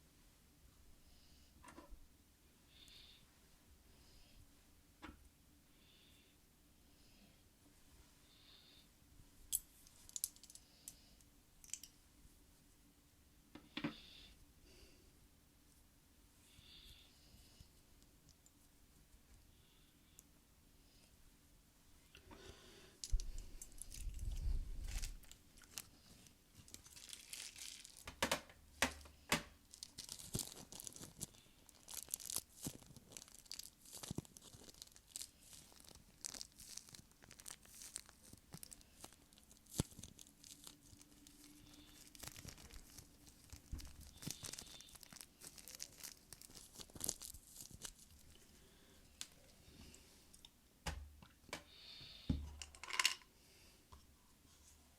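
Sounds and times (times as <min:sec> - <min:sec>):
tearing and crinkling: 0:23.0 - 0:26.0, 0:26.6 - 0:28.1, 0:29.7 - 0:48.4.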